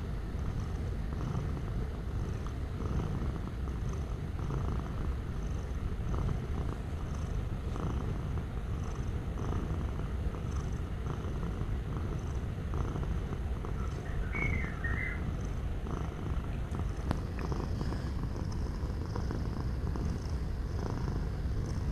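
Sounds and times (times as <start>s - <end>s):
cat purring: 0.0s - 21.9s.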